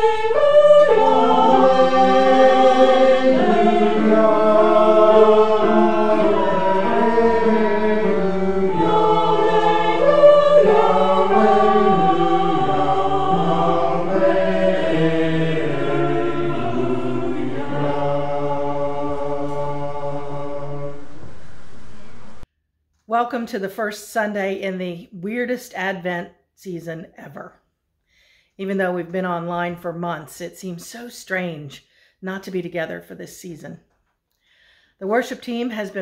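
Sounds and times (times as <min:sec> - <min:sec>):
choir singing in harmony: 0:00.0 - 0:22.4.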